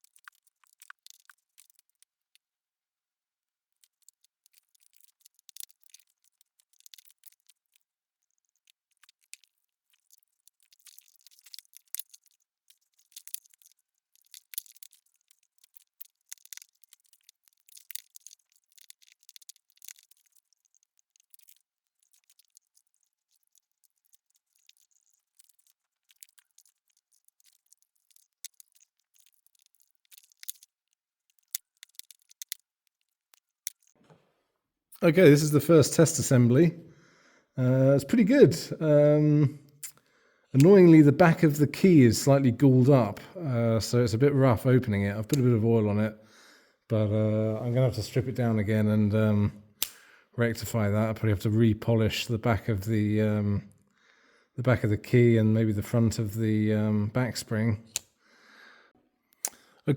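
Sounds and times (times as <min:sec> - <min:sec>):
sharp clicks of metal parts: 0:49.8 - 0:50.0.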